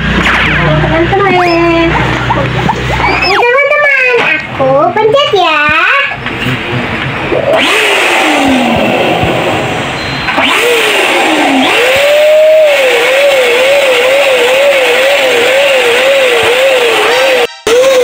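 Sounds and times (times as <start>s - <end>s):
electronic siren-like tone: 2.6s - 3.6s, 17.0s - 18.0s.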